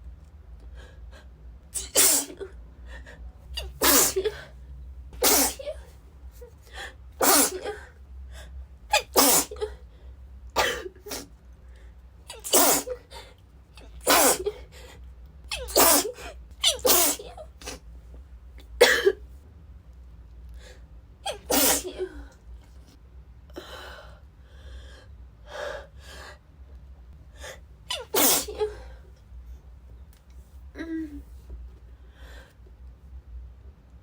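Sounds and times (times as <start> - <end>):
woman sneezing: 1.8 - 2.4, 3.6 - 4.5, 5.2 - 5.8, 7.2 - 7.8, 9.0 - 9.8, 12.3 - 13.1, 14.0 - 14.6, 15.5 - 17.8, 21.3 - 22.1, 27.9 - 28.8
quiet breaths: 23.5 - 26.6.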